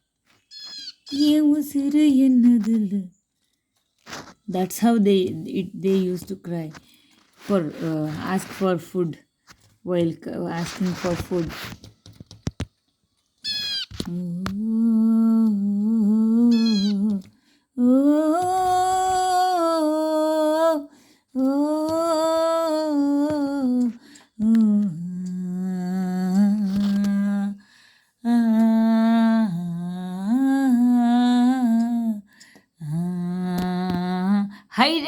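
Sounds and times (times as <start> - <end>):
person humming a slow melody: 14.0 - 27.6, 28.2 - 34.6.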